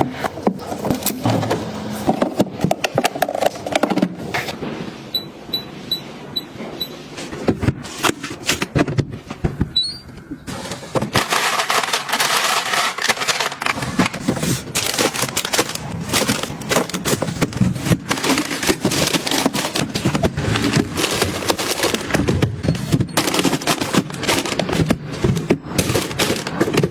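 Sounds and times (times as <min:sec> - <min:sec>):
short high beeps: 0:05.1 - 0:07.0
kitchen things clattering: 0:10.5 - 0:26.9.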